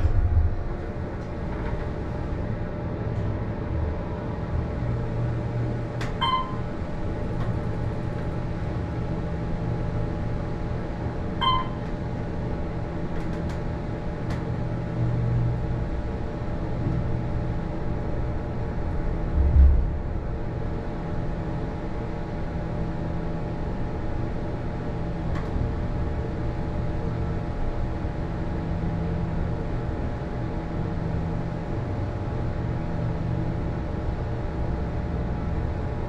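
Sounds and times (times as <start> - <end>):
short beeps: 6.2 - 6.6, 11.4 - 11.9
low thump: 19.4 - 20.1.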